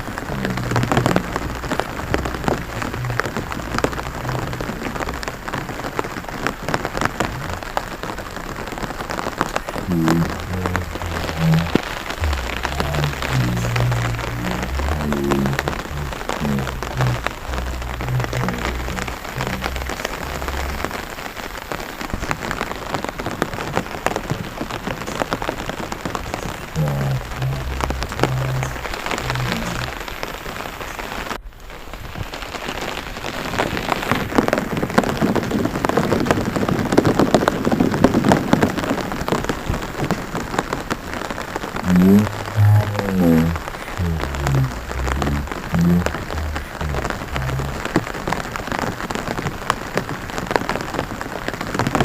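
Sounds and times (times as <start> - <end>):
low stepped notes: 0.0 - 5.6, 7.2 - 7.7, 9.5 - 21.2, 26.4 - 30.0, 41.8 - 48.2
rain pattering on water: 0.0 - 52.0.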